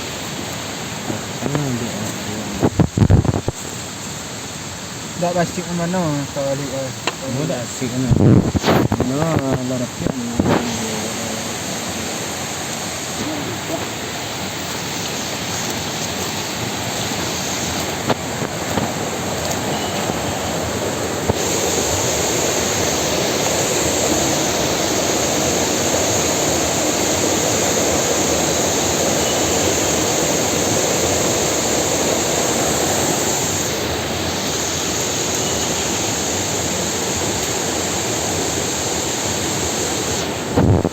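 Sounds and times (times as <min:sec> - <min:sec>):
higher hiss: 0:00.0 - 0:40.9
steady rushing noise: 0:00.0 - 0:40.9.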